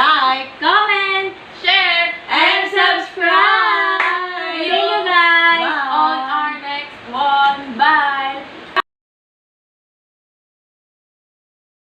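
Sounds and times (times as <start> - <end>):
women singing: 0.0 - 8.5.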